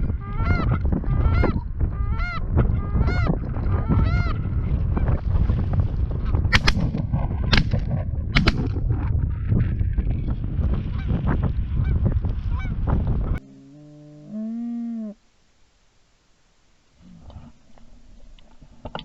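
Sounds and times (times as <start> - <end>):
wind rumble on microphone: 0.0 - 13.4
geese honking: 0.2 - 4.4
sharp cracks: 6.5 - 8.8.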